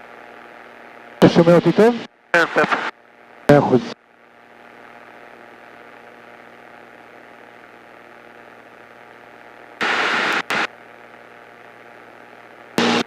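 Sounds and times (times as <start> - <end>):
airplane engine hiss through headset: 1.1 - 2.9, 3.5 - 4.0, 9.8 - 10.7
radio static bursts: 1.2 - 2.9, 9.8 - 10.7, 12.8 - 13.0.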